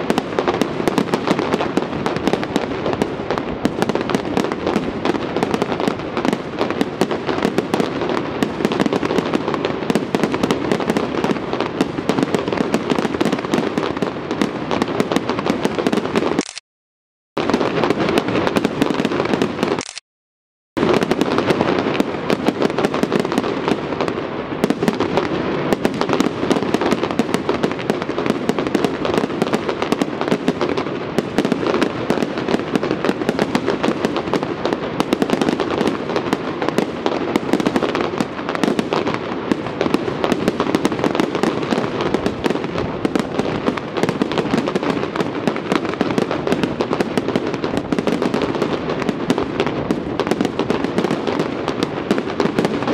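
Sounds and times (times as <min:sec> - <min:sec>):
fireworks popping and crackling: 0:00.0 - 0:16.6, 0:17.4 - 0:20.0, 0:20.8 - 0:52.9.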